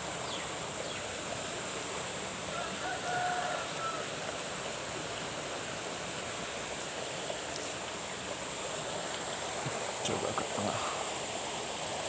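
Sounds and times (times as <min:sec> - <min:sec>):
running water rushing: 0:03.4 - 0:12.0.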